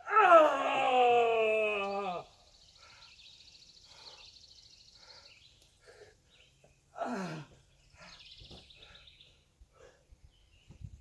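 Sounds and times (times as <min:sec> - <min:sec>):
man groaning in pain: 0:00.0 - 0:02.2, 0:07.0 - 0:07.5
faint birds chirping: 0:00.8 - 0:11.0.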